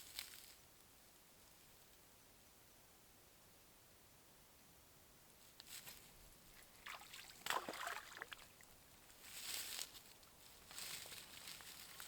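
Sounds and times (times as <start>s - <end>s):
water splashing in shallows: 6.6s - 8.7s.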